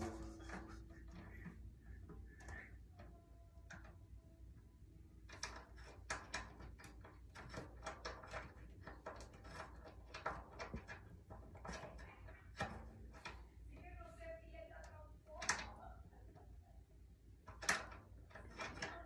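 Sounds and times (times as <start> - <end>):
metal drum hardware clicks and clanks: 0.0 - 1.6.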